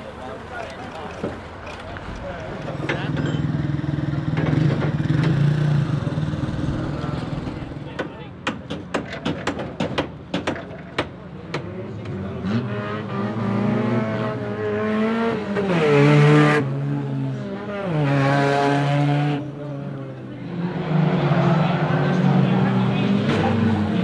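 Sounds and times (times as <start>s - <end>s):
race car engines revving: 0.0s - 8.4s, 11.2s - 24.0s
loud noisy rushes: 5.6s - 8.0s.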